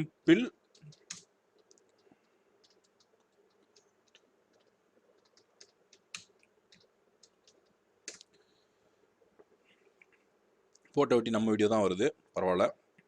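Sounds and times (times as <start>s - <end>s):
computer keys and mouse clicking: 0.6s - 8.4s.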